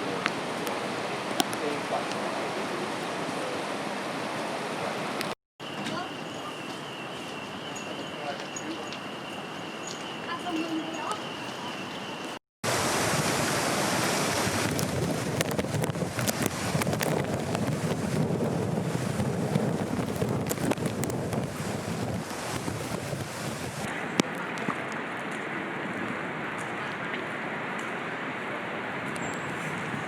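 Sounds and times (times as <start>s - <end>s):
floodwater rushing: 0.0s - 5.4s, 12.6s - 30.0s
wind buffeting microphone: 12.8s - 25.1s.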